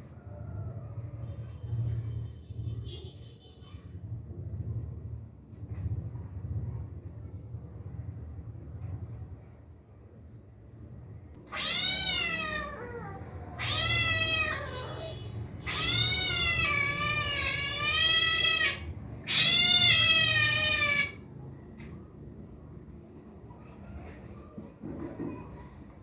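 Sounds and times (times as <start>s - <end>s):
cat meowing: 11.4s - 21.2s.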